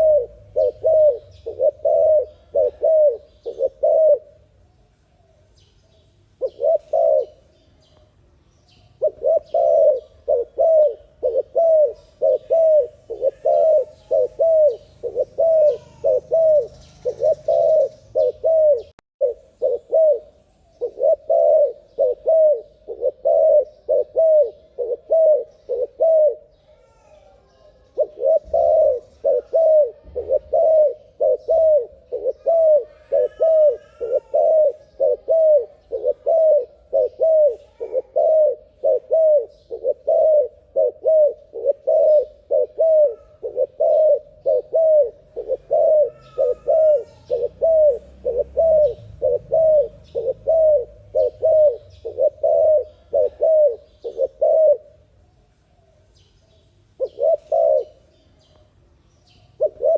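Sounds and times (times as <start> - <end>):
bird chirps: 0.0 - 4.2, 5.2 - 38.0, 41.1 - 54.8, 55.8 - 59.9
dove cooing: 0.0 - 4.6, 6.4 - 7.6, 8.8 - 55.2, 56.9 - 58.1, 59.3 - 59.9.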